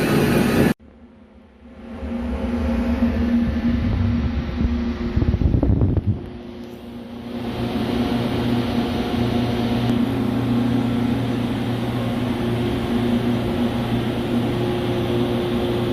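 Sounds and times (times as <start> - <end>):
lathe machine hum: 6.2 - 15.9.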